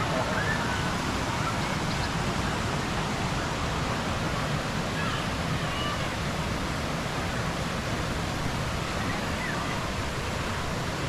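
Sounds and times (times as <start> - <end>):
waterfall rushing over rocks: 0.0 - 11.0.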